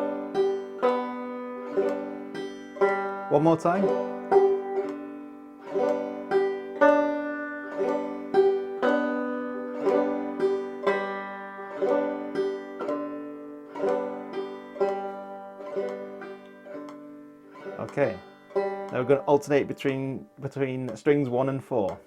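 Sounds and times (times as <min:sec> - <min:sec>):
banjo strumming: 0:00.0 - 0:22.0.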